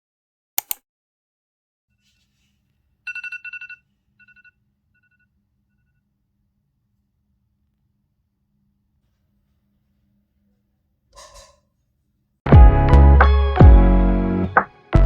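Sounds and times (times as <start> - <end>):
sharp clicks: 0.6 - 0.8.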